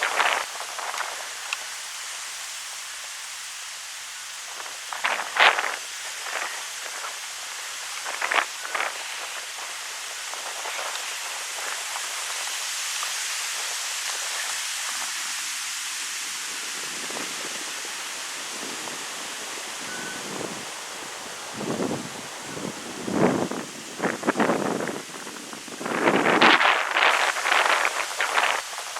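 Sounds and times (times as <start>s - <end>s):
wind rustling leaves: 0.0s - 28.9s.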